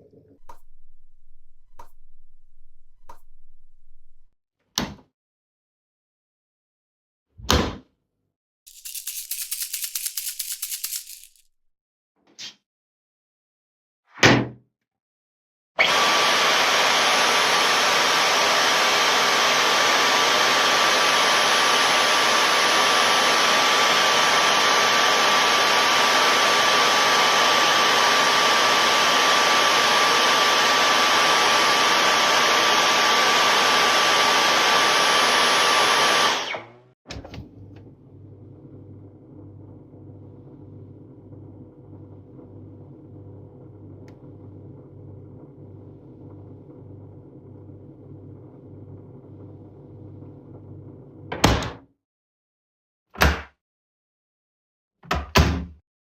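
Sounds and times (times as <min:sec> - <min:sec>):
vacuum cleaner running with whine: 0:15.8 - 0:36.9.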